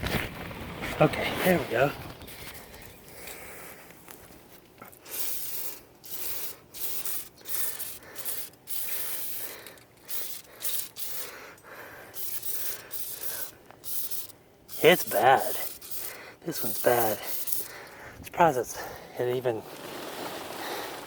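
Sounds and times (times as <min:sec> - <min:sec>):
aerosol spray hissing: 0:05.1 - 0:11.4, 0:12.1 - 0:17.9.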